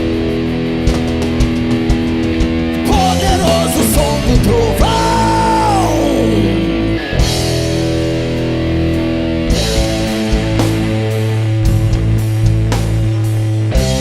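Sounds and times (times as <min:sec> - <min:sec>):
drums with cymbal crashes: 0:00.0 - 0:05.4, 0:07.2 - 0:14.0
distorted electric guitars: 0:00.0 - 0:14.0.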